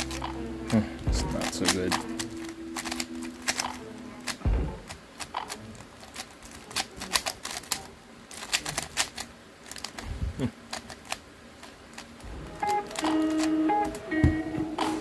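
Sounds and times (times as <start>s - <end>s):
puzzle cube clicking: 0.0s - 10.1s, 10.7s - 15.0s
low thump: 4.4s - 4.9s.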